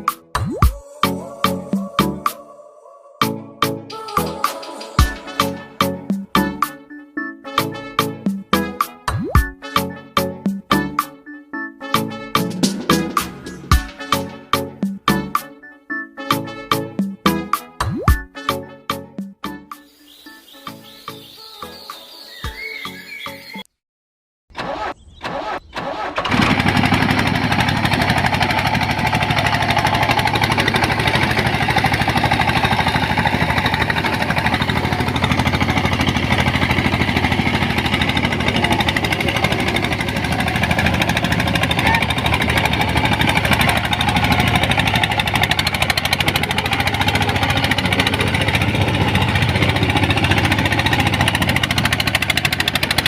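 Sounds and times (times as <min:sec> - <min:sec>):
small engine starting and running: 0:24.5 - 0:53.0.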